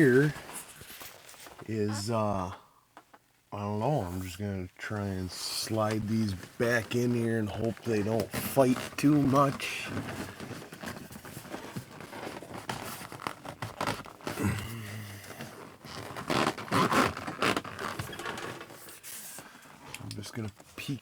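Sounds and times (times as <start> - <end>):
curtain rustling and scraping: 8.1 - 19.9.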